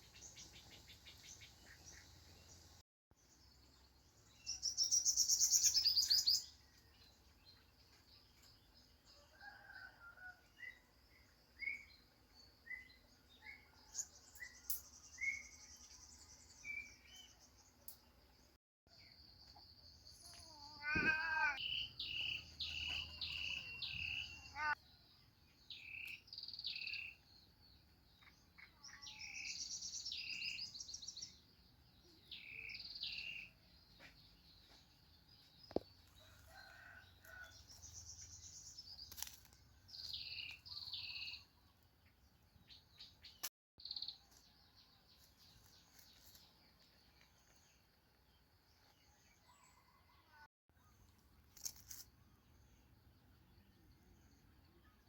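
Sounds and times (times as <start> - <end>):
birds chirping: 11.6 - 50.0.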